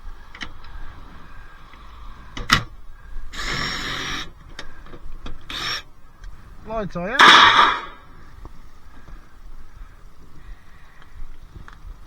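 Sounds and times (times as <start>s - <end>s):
light clicks of parts: 0.3s - 0.8s, 4.4s - 6.4s
metal parts scraping: 7.2s - 8.0s
sharp knock: 7.2s - 8.0s.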